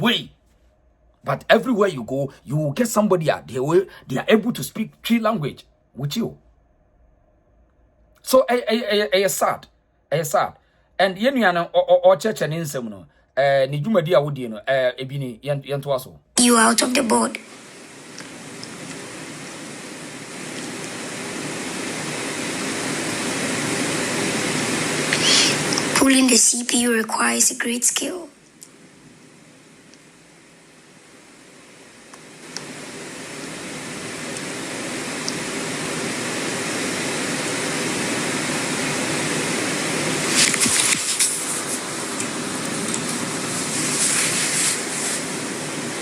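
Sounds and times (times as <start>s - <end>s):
hot air blower rushing: 17.6s - 26.0s, 32.4s - 46.0s
hot air gun hissing: 21.0s - 26.0s, 43.2s - 45.6s.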